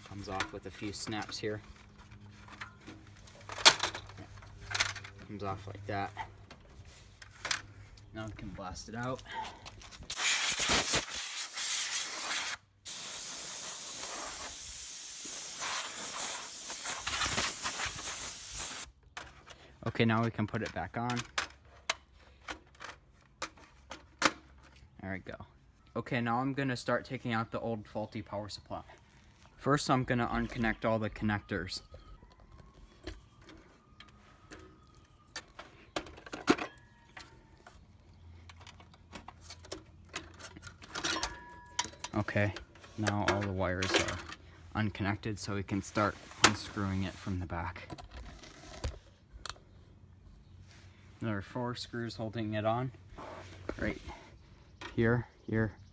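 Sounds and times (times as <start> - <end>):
compressed air hissing: 10.1 - 18.9.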